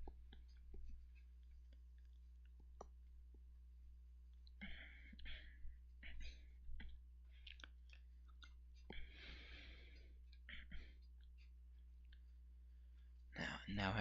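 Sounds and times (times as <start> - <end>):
low electrical hum: 0.0 - 14.0
close-up breathing: 8.8 - 11.6.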